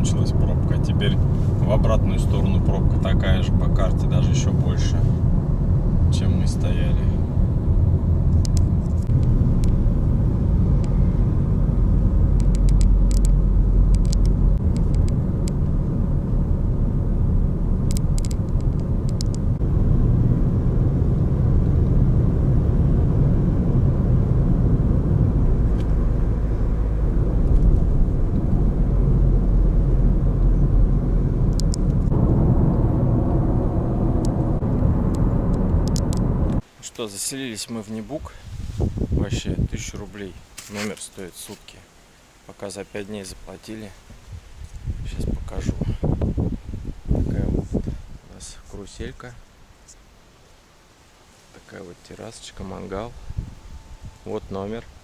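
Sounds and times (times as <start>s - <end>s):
car road and engine rumble: 0.0s - 36.8s, 52.6s - 55.0s
light clicks: 8.3s - 9.8s, 12.3s - 15.8s, 17.8s - 19.5s, 31.5s - 32.1s, 34.2s - 36.6s.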